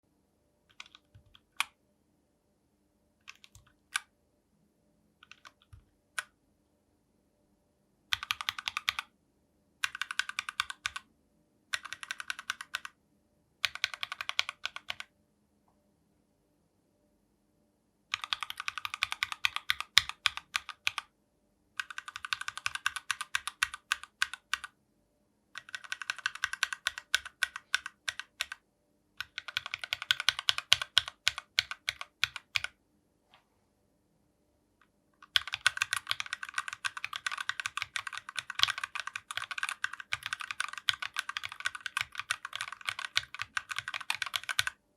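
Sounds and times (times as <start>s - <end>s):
fast typing on mechanical keyboard: 0.7s - 1.7s, 3.3s - 4.0s, 5.2s - 5.8s, 8.1s - 9.1s, 9.8s - 11.0s, 11.7s - 12.9s, 13.6s - 15.1s, 18.1s - 21.0s, 21.8s - 24.7s, 25.6s - 28.6s, 29.2s - 32.7s, 35.2s - 44.8s.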